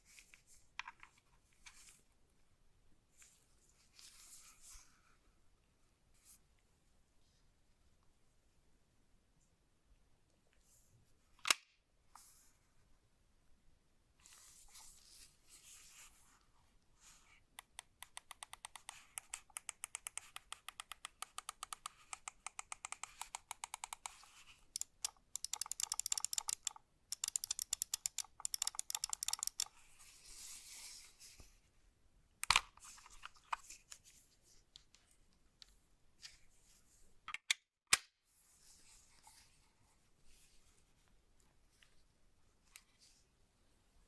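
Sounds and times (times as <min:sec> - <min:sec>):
mouse buttons clicking: 0:17.6 - 0:29.7.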